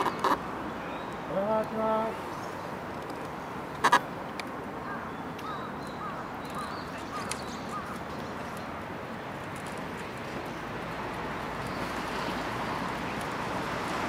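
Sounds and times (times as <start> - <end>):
bird chirping: 0.0 - 1.4, 4.8 - 8.8
outdoor background noise: 0.0 - 14.0.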